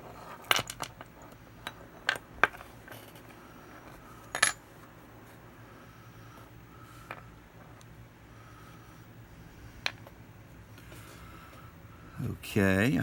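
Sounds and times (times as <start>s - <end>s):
small metal parts clinking: 0.1s - 3.4s, 4.2s - 4.6s.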